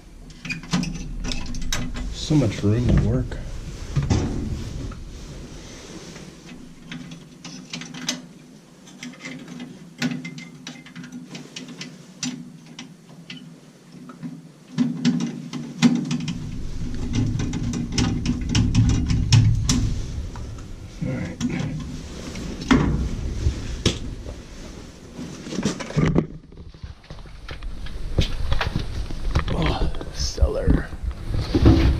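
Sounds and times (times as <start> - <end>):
deep rumble: 0.0 - 7.2, 16.2 - 31.9
steady low hum: 0.0 - 7.8, 16.1 - 31.9
hand tools and metal parts clattering: 0.2 - 27.6.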